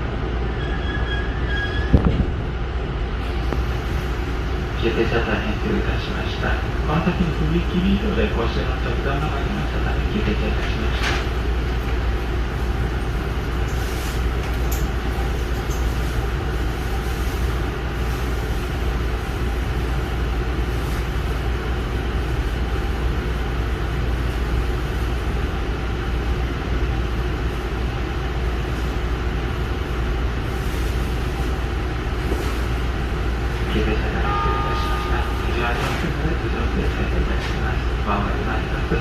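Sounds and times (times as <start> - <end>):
train car rumble and hum: 0.0 - 39.0.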